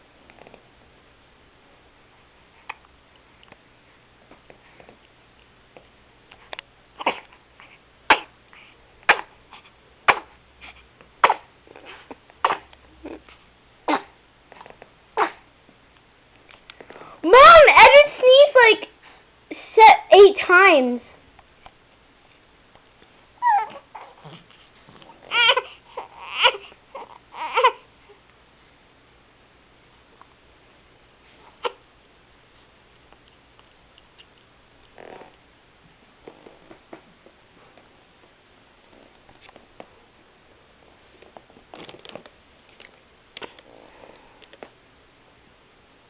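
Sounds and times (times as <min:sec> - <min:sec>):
baby sneezing: 0:07.0 - 0:07.4, 0:08.1 - 0:08.4, 0:09.1 - 0:09.4, 0:10.1 - 0:10.4, 0:11.2 - 0:12.7, 0:13.8 - 0:14.2, 0:15.2 - 0:15.5
baby whimpering cries: 0:23.4 - 0:24.4, 0:25.1 - 0:27.9.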